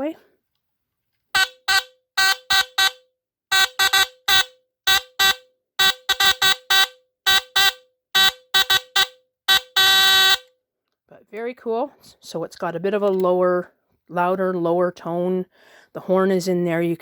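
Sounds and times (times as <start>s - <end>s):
alarm buzzer blasts: 1.3s - 10.6s.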